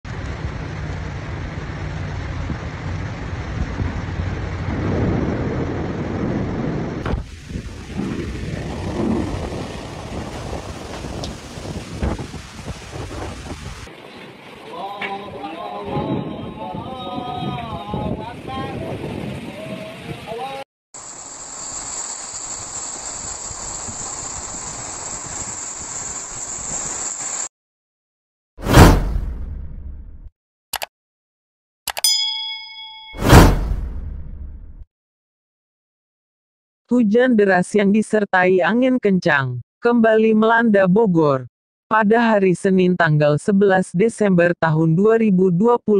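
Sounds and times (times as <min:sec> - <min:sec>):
heavy rain: 0:00.1 - 0:16.7, 0:21.0 - 0:27.5
strong wind: 0:00.2 - 0:14.5, 0:15.3 - 0:20.5
wind gusting on microphone: 0:02.2 - 0:13.9, 0:15.6 - 0:20.5.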